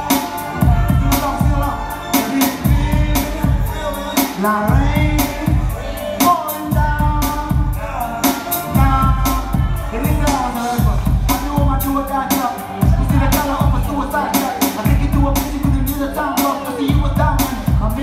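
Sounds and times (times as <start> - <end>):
deep bass: 0.0 - 18.0
person singing: 0.0 - 18.0
drum hits: 4.7 - 5.8, 8.8 - 12.0, 12.8 - 15.9.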